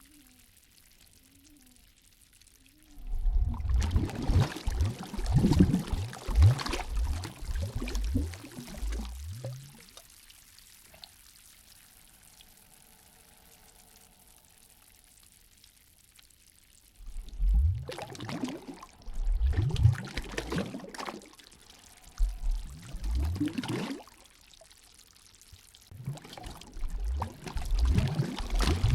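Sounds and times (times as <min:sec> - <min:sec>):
water sloshing and gurgling: 0:02.8 - 0:11.2, 0:16.9 - 0:28.9.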